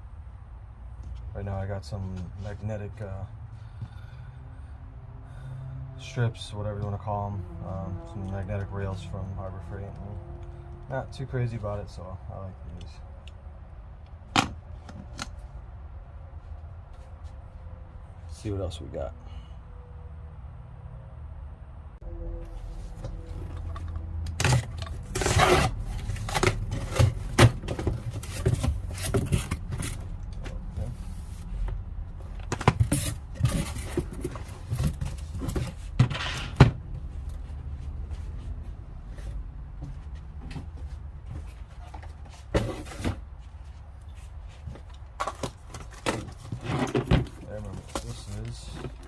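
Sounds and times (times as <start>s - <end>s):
low steady hum: 0.0s - 42.0s
tools and packaging handled: 23.2s - 30.5s.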